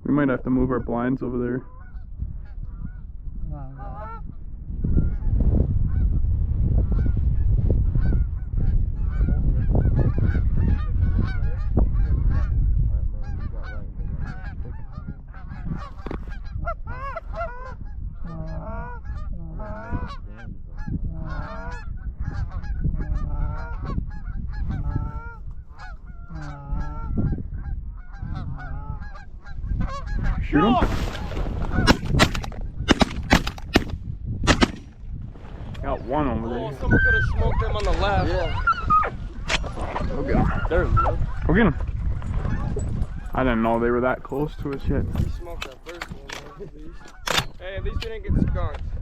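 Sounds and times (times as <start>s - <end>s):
geese honking: 13.2s - 32.2s.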